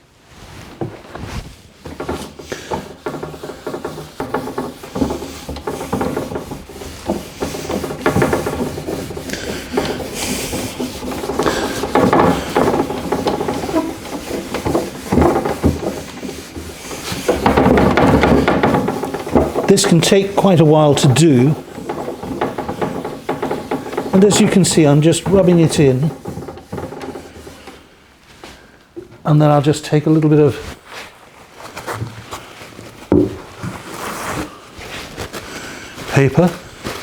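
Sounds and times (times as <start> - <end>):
wire wool scrubbing wood: 0.3 - 28.7.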